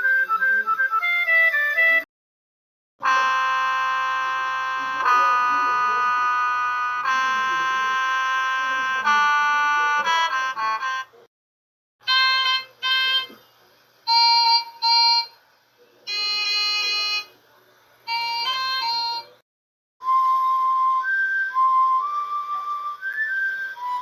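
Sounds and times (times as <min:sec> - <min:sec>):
whistle-like melody: 0:00.0 - 0:02.0, 0:14.1 - 0:15.4, 0:20.0 - 0:24.0
harmonica-like reedy phrases: 0:03.0 - 0:11.2, 0:12.0 - 0:13.4, 0:14.1 - 0:15.4, 0:18.1 - 0:19.4.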